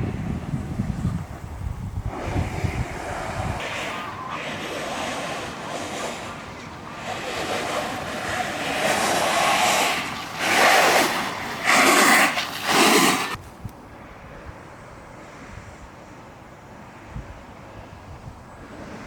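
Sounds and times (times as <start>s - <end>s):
wheels rolling on asphalt: 0.0s - 13.8s
wind rushing over microphone: 0.0s - 19.0s.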